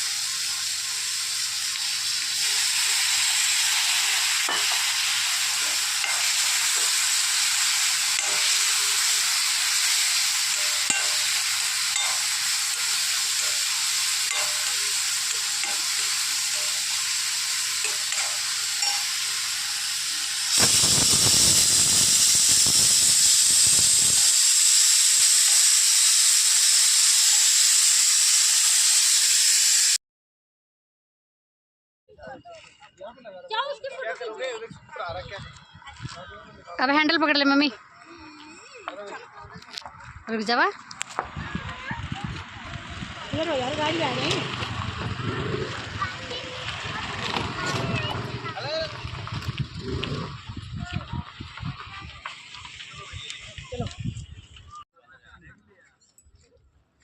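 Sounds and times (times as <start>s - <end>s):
deep wind buffeting: 20.5s - 24.3s, 41.2s - 52.2s.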